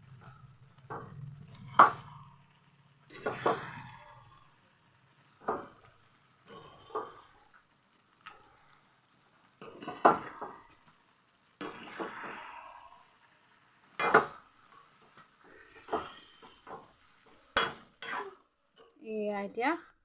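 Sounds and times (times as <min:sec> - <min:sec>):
spoon scraping a cooking pan: 0:03.1 - 0:04.4, 0:09.6 - 0:10.9, 0:11.6 - 0:12.5, 0:13.9 - 0:19.0.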